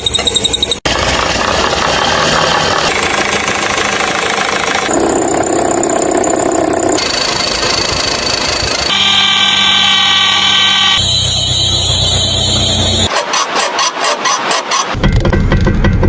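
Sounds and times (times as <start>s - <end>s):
mechanical engine noise: 0.0s - 16.0s
humming whine: 0.9s - 13.1s
thin high-pitched whine: 7.0s - 13.1s.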